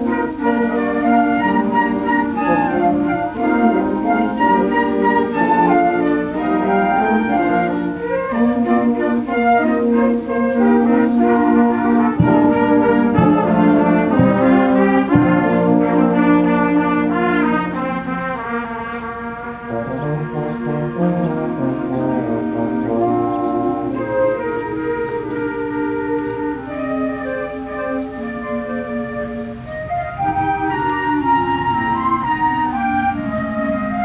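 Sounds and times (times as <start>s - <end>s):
wind band playing: 0.0s - 34.0s
sharp percussion strikes: 12.2s - 16.1s.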